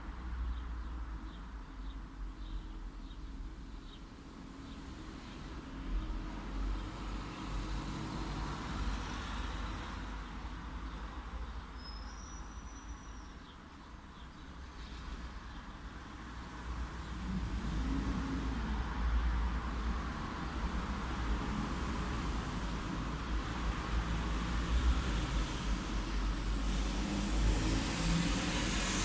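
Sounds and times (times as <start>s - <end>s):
vehicles passing: 15.8s - 29.0s.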